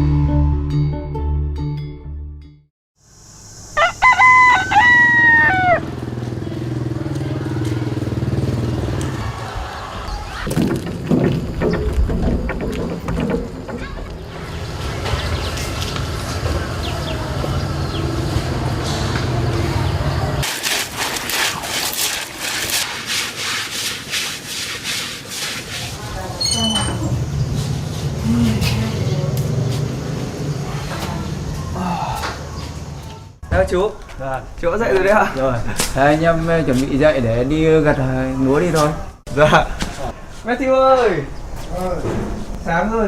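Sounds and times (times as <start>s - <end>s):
rooster crowing: 3.7s - 6.2s.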